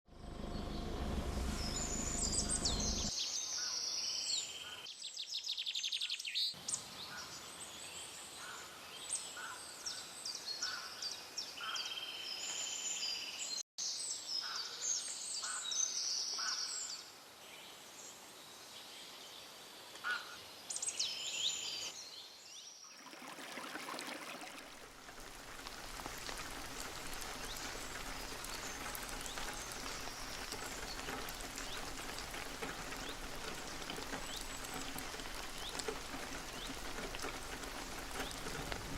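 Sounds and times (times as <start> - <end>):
low rumble: 0.1 - 3.1
songbirds singing: 0.2 - 17.8, 25.6 - 38.9.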